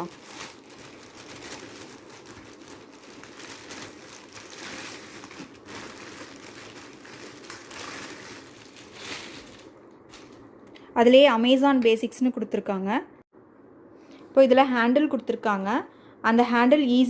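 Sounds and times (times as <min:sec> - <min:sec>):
packaging rustling and crinkling: 0:00.0 - 0:10.5.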